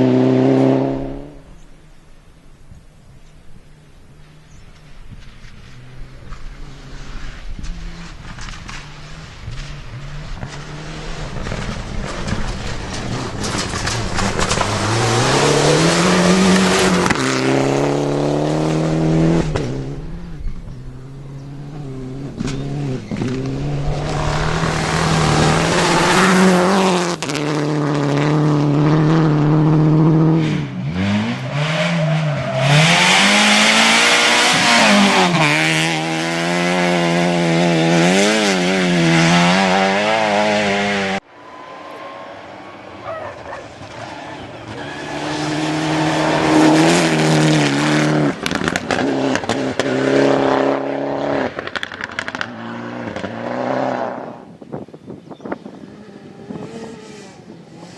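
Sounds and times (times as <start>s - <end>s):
rally car engine revving hard: 0.0s - 1.4s, 6.7s - 20.3s, 21.0s - 41.2s, 43.6s - 54.4s
hissing tyre and road noise: 41.2s - 49.5s.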